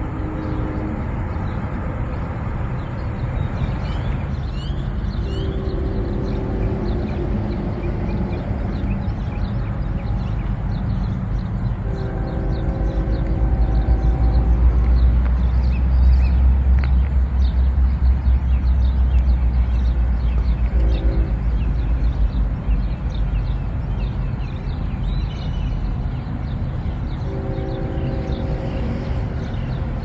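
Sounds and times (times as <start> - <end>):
distant train horn: 0.0 - 4.4, 5.2 - 9.0, 11.7 - 15.8, 20.3 - 21.9, 27.1 - 29.8
low rumble: 0.0 - 9.6
birds chirping: 0.0 - 11.0.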